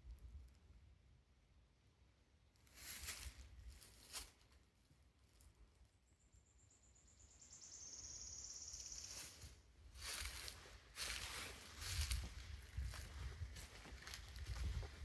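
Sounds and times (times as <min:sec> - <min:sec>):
footsteps on woodland floor: 0:10.0 - 0:15.0.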